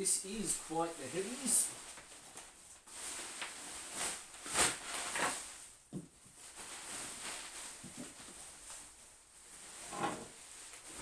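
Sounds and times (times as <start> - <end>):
cardboard and plastic rustling: 0.0 - 11.0.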